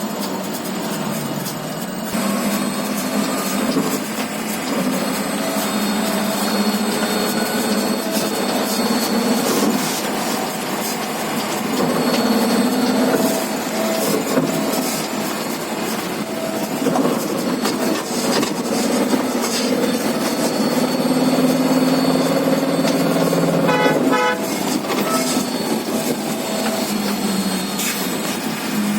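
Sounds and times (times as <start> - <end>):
electric bus running: 0.0 - 28.9
whining tones shifting in pitch: 0.0 - 28.9
short sharp pitched tone: 19.6 - 28.0.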